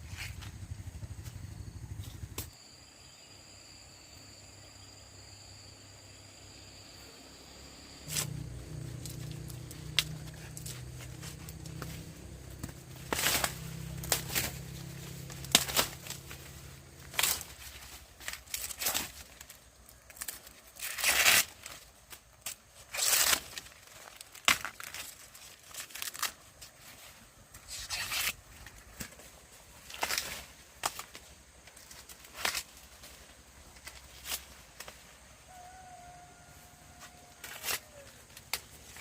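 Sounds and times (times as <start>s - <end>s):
dry corn leaves rustling: 8.0s - 39.0s.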